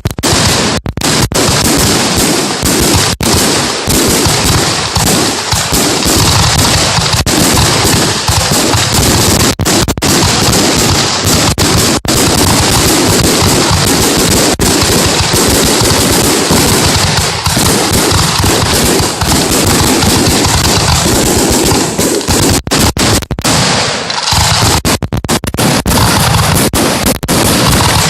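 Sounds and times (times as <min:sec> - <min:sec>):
fireworks crackling and banging: 0:00.0 - 0:28.0.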